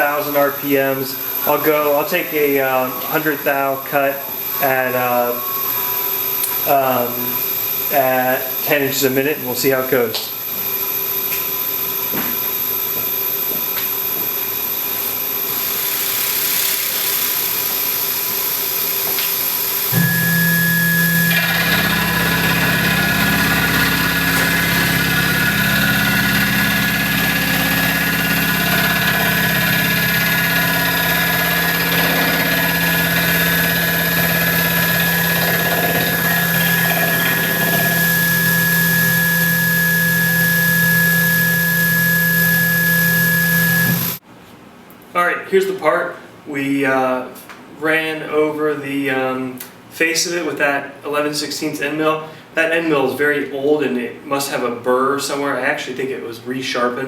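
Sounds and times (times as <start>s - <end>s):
machine whine and low hum: 0.0s - 44.2s
mill cutting aluminum: 18.9s - 44.2s.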